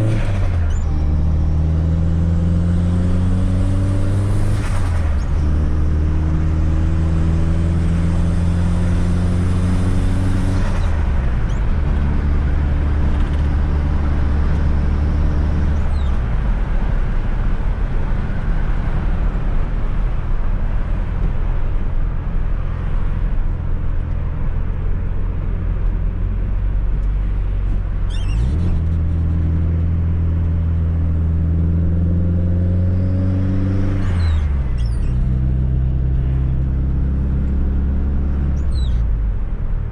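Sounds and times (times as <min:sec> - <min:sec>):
car engine accelerating through gears: 0:00.0 - 0:19.7, 0:25.0 - 0:39.2
road noise: 0:00.0 - 0:39.9.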